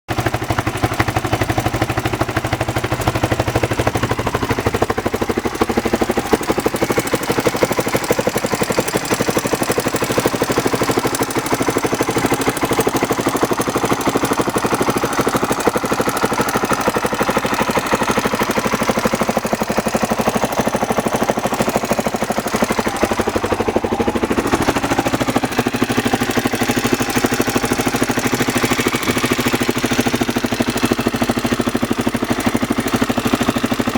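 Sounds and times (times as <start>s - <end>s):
engine ticking noise: 0.1s - 33.9s
motorcycle engine idling: 0.1s - 33.9s.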